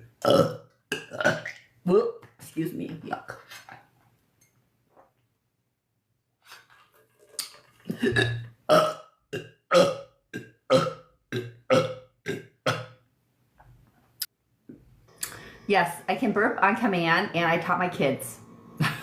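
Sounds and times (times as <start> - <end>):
woman burping: 0.2 - 1.5, 7.8 - 9.0, 9.7 - 10.0, 10.7 - 12.9.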